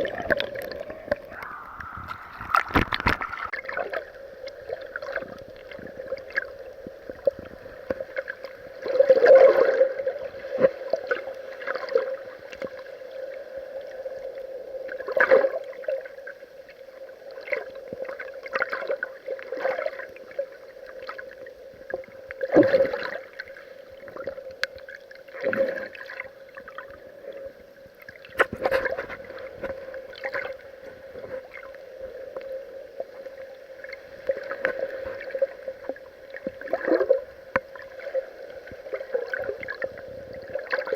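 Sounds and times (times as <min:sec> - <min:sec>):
muffled water sloshing: 0:00.0 - 0:09.8.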